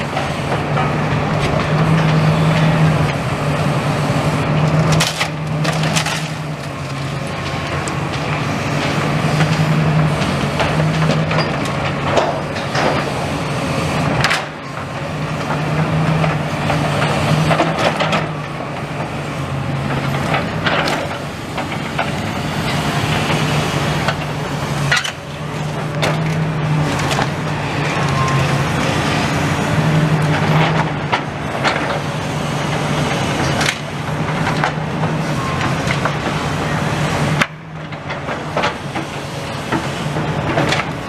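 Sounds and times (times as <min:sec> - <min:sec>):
excavator diesel engine running: 0:00.0 - 0:41.0
rubble and timber crunching: 0:04.6 - 0:13.4.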